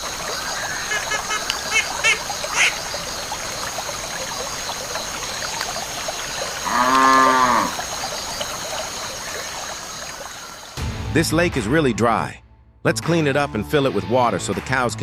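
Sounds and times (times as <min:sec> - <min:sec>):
trickle of flowing water: 0:00.0 - 0:10.8
cow mooing: 0:06.6 - 0:07.8.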